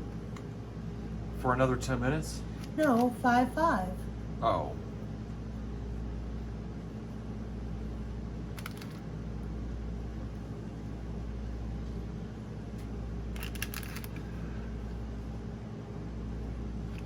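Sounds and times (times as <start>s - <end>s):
air fryer fan hum: 0.0s - 17.0s
handling clicks: 8.6s - 9.0s, 13.4s - 14.3s.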